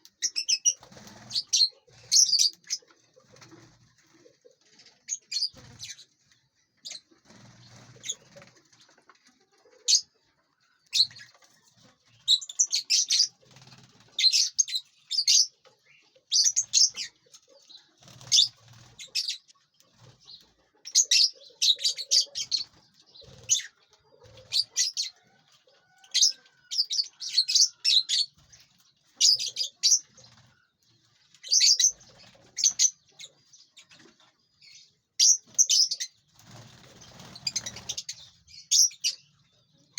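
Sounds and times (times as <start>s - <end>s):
wings flapping: 0.6s - 6.0s, 7.1s - 9.3s, 13.1s - 14.5s, 18.0s - 19.2s, 22.4s - 24.8s, 31.8s - 32.8s, 36.3s - 38.3s
birds chirping shrill calls: 26.0s - 28.6s, 31.4s - 39.4s.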